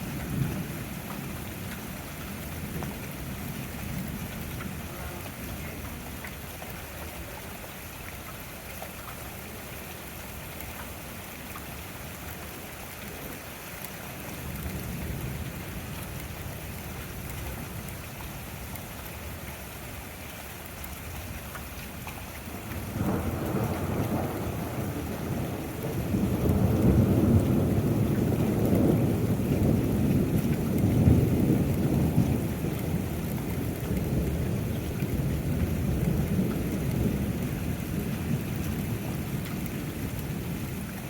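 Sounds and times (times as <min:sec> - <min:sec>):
steady rain falling: 0:00.0 - 0:41.0
thunder rumbling: 0:22.5 - 0:41.0.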